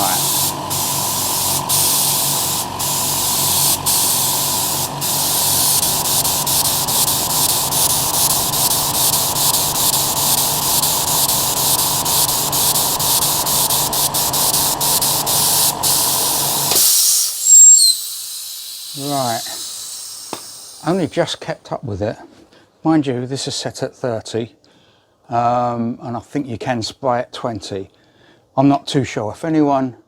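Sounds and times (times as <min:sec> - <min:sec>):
air spray gun hissing: 0:00.0 - 0:21.2
air compressor motors humming: 0:00.0 - 0:21.3.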